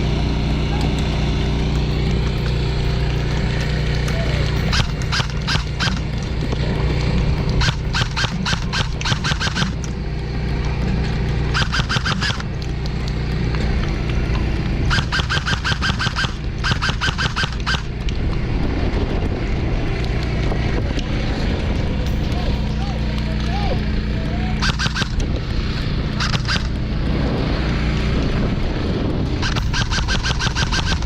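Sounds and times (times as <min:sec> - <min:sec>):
steady low drone: 0:00.0 - 0:31.0
airsoft guns firing full-auto: 0:02.5 - 0:13.6, 0:14.8 - 0:18.0, 0:24.6 - 0:26.9, 0:29.4 - 0:31.0.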